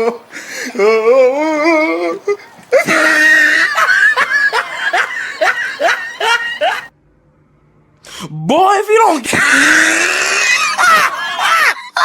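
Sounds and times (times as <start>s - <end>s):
wavering vocal cry: 0.0s - 6.9s, 9.3s - 12.0s
people laughing and exclaiming: 0.8s - 6.9s, 9.3s - 12.0s.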